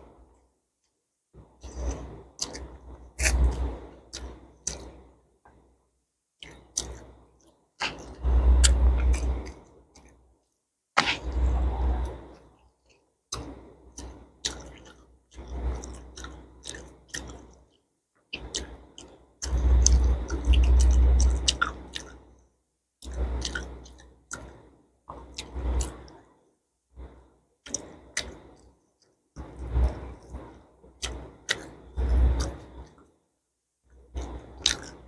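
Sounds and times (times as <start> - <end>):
close chewing with mouth clicks: 1.6 - 5.1, 6.4 - 10.2, 12.8 - 22.3, 23.0 - 26.2, 27.6 - 33.1, 34.0 - 35.0.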